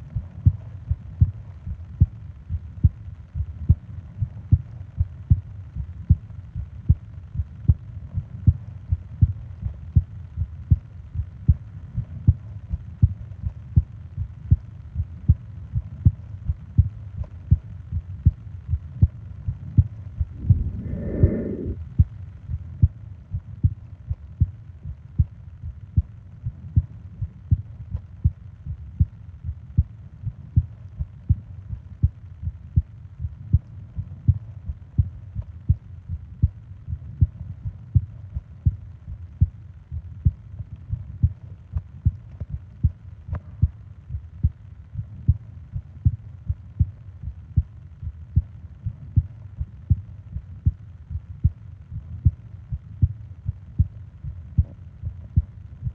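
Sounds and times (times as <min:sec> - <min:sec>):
human heartbeat thumps: 0:19.8 - 0:21.8, 0:32.0 - 0:55.9.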